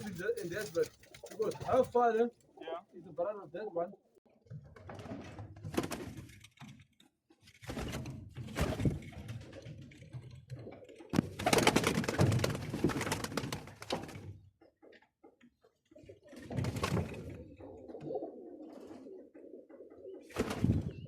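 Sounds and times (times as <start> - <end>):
pigeons cooing: 10.5 - 21.0.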